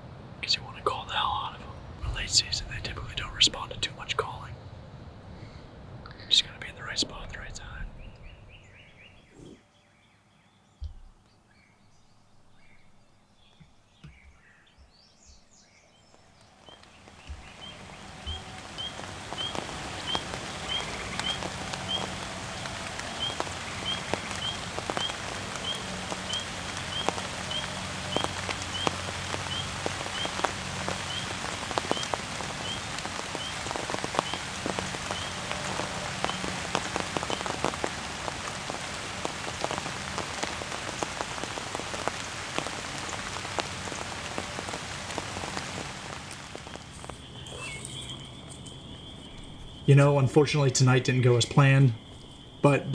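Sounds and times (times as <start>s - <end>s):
rain falling steadily: 0.0s - 9.0s, 15.2s - 52.9s
faint chirps: 5.4s - 9.7s, 16.2s - 52.9s.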